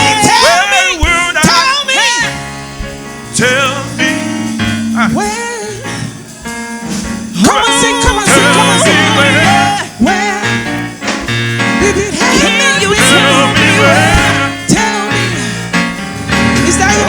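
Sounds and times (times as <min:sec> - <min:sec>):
band playing: 0:00.0 - 0:17.0
person singing with vibrato: 0:00.0 - 0:17.0.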